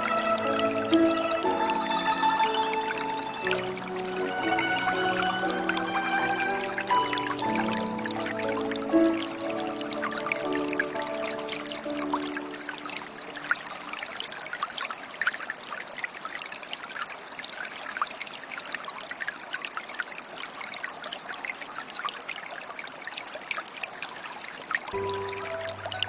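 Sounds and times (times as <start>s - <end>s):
soft music with held tones: 0.0s - 13.8s, 24.9s - 26.0s
stream trickling and babbling: 0.0s - 26.0s.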